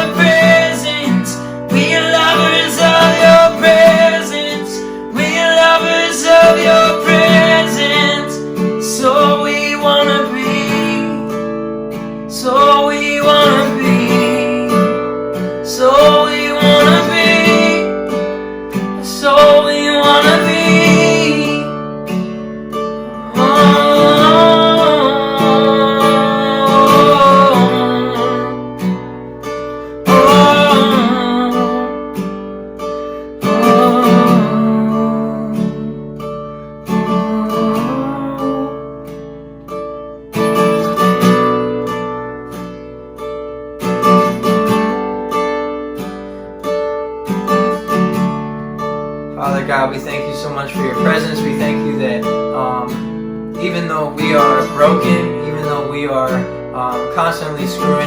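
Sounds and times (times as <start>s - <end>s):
person singing: 0.0s - 11.4s, 12.3s - 15.0s, 15.7s - 18.2s, 19.0s - 21.8s, 23.1s - 28.8s, 30.1s - 32.1s, 33.4s - 36.1s, 36.9s - 39.0s, 49.4s - 53.0s, 53.6s - 58.0s
strummed acoustic guitar: 0.0s - 58.0s.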